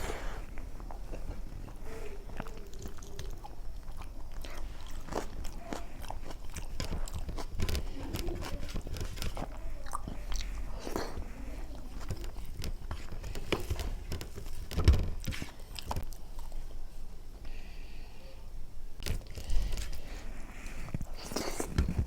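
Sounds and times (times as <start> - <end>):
chewing and wet mouth sounds: 0.0 - 17.0, 19.0 - 22.0.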